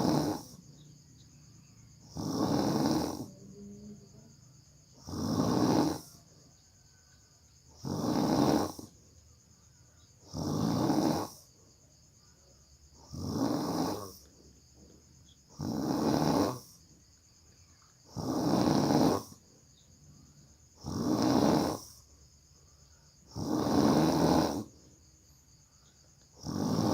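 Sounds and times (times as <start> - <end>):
person snoring loudly: 0.0 - 0.7, 2.0 - 3.4, 4.9 - 6.3, 7.7 - 9.0, 10.2 - 11.5, 13.0 - 14.3, 15.5 - 16.8, 18.0 - 19.4, 20.8 - 22.0, 23.2 - 24.8, 26.4 - 26.9.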